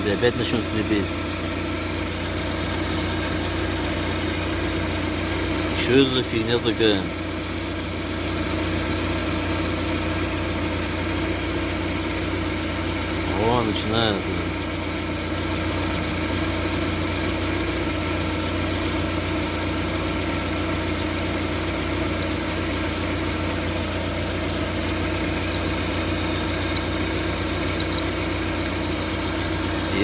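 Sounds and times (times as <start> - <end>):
car engine idling: 0.0 - 30.0
drive belt squeaking: 8.3 - 14.7, 18.5 - 30.0.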